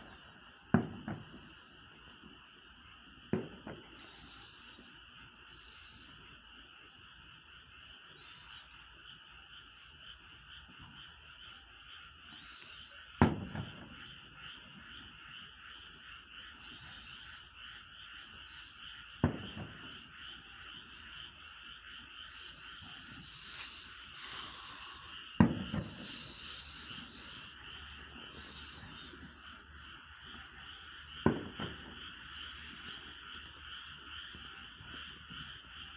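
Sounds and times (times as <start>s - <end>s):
frogs croaking: 0.0s - 35.9s
distant firework booms: 19.2s - 20.0s, 23.0s - 32.2s.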